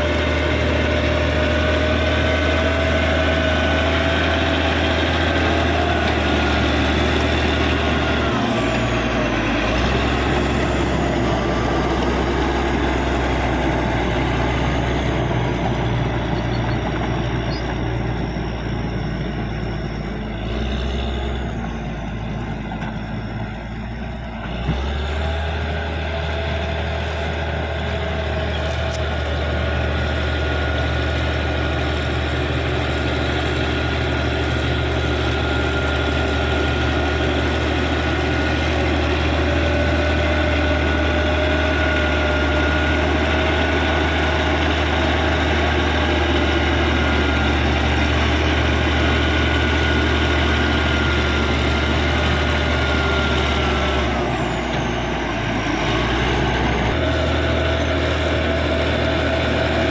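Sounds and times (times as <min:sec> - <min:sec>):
bulldozer diesel engine running: 0:00.0 - 0:59.9.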